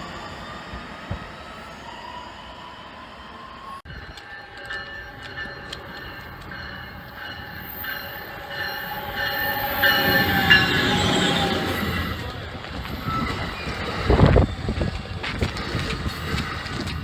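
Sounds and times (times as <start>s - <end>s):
rail clicks: 0.0s - 17.0s
steel wheels squealing: 0.0s - 17.0s
train rolling on rails: 0.0s - 17.0s.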